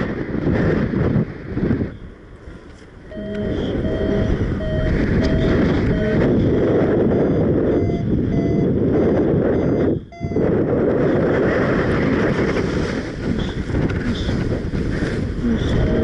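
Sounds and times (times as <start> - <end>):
strong wind on microphone: 0.0 - 16.0
short electronic beeps: 3.1 - 6.3, 7.1 - 8.8, 9.5 - 10.5, 15.8 - 16.0.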